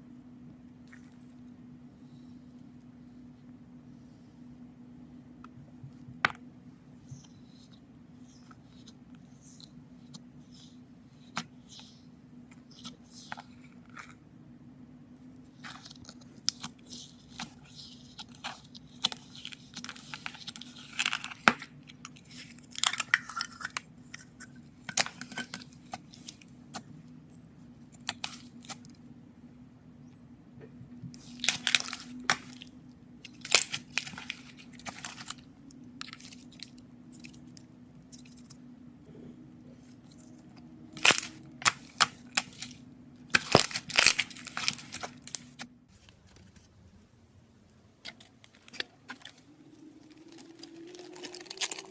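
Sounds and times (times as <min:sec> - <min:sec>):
faint low hum: 0:00.0 - 0:51.9
slime crackling and popping: 0:31.2 - 0:35.4, 0:41.0 - 0:45.7, 0:49.1 - 0:51.9.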